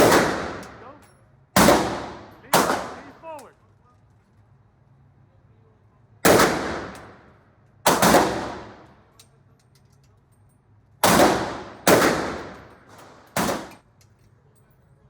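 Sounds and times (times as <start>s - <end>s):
pistol shots ringing indoors: 0.0s - 3.4s, 6.2s - 9.2s, 11.0s - 13.9s.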